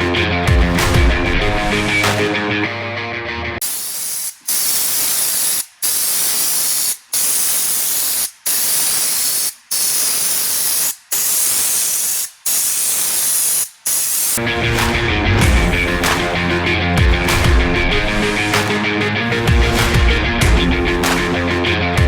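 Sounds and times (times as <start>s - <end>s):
compressed-air spray gun hissing: 3.6s - 14.4s.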